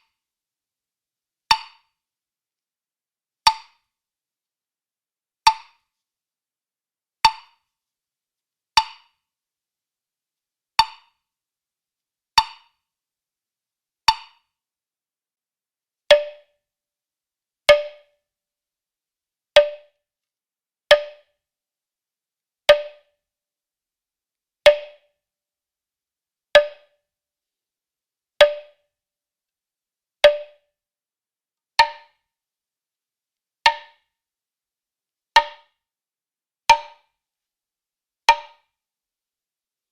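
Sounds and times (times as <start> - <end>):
woodblock hits: 1.5 - 1.9, 7.3 - 7.6, 8.8 - 9.1, 10.8 - 11.1, 12.4 - 12.8, 14.1 - 14.4, 16.1 - 16.5, 17.7 - 18.1, 19.6 - 19.9, 20.9 - 21.3, 22.7 - 23.1, 24.7 - 25.0, 26.6 - 26.9, 28.4 - 28.7, 30.2 - 30.6, 31.8 - 32.2, 33.7 - 34.0, 35.4 - 35.8, 36.7 - 37.1, 38.3 - 38.7.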